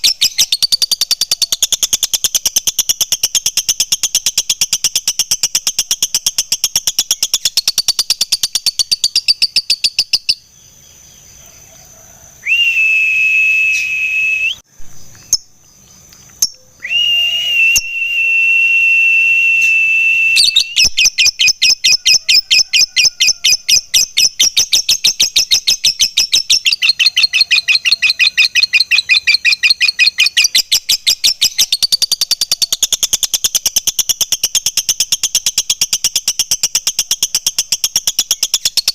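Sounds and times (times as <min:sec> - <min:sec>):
long steady whistle tones: 0:12.4 - 0:14.7, 0:16.8 - 0:20.9
bird chattering: 0:20.6 - 0:38.9.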